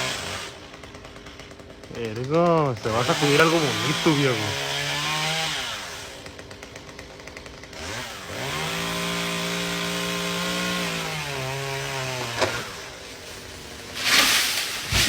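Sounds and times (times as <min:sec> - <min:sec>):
engine revving: 0:02.8 - 0:06.0, 0:07.8 - 0:12.8
sharp crack: 0:13.3 - 0:15.0.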